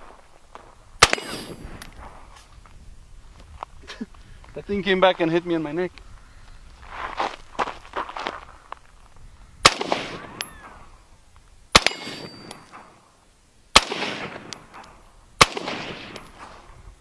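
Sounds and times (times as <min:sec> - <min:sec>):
bullets clanging on steel: 0:01.0 - 0:02.1, 0:11.8 - 0:13.0, 0:14.2 - 0:15.1
rifle shots with rolling echo: 0:01.0 - 0:02.1, 0:09.6 - 0:10.9, 0:11.7 - 0:13.0, 0:13.7 - 0:16.6.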